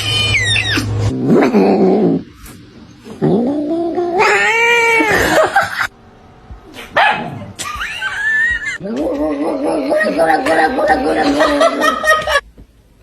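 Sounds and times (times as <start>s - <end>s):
cat yowling: 3.2s - 5.9s.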